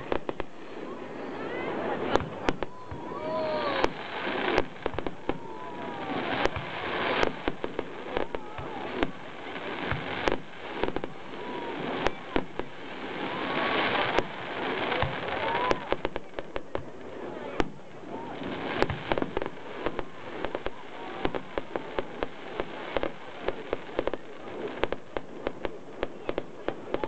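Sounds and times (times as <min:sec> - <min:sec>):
fireworks bangs: 0:00.0 - 0:27.0
fireworks hissing crackle: 0:00.0 - 0:27.0.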